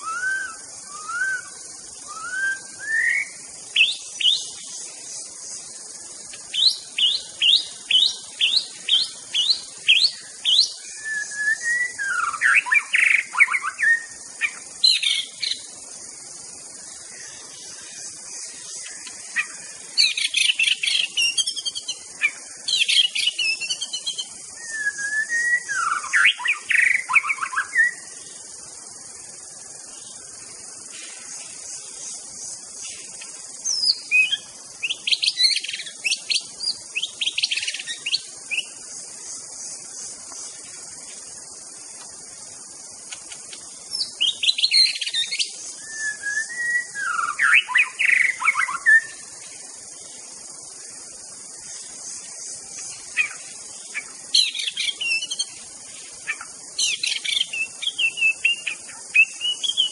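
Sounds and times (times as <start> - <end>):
bird singing varied phrases: 0.0 - 5.3, 6.2 - 15.7, 18.6 - 28.2, 32.9 - 38.8, 43.3 - 49.3, 52.9 - 59.9
high insect buzz: 0.0 - 59.9.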